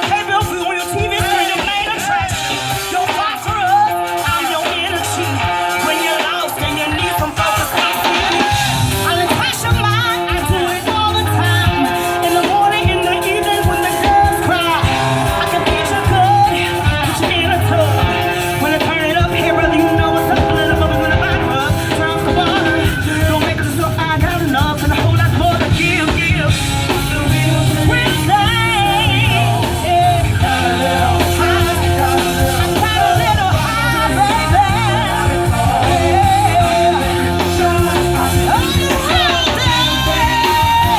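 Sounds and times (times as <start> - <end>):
lead singer singing: 0.0 - 40.9
live band playing: 0.0 - 40.9.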